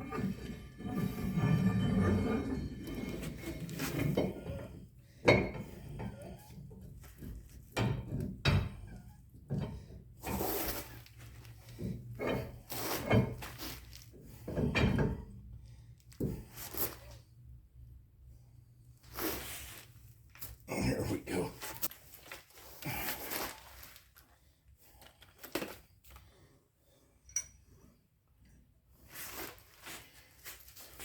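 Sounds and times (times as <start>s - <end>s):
clunks and scrapes: 0.0s - 17.3s, 27.3s - 31.0s.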